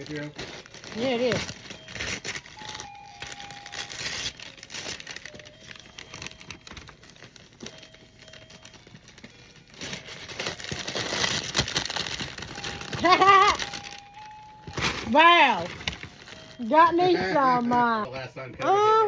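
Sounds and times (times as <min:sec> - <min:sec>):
paper crinkling and rustling: 0:00.0 - 0:19.0
paper tearing: 0:09.8 - 0:13.7.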